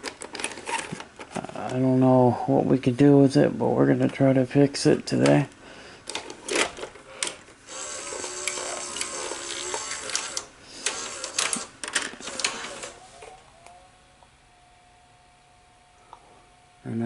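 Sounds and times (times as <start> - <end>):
motor whirring: 7.7 - 13.9
faint steady tone: 13.0 - 17.0.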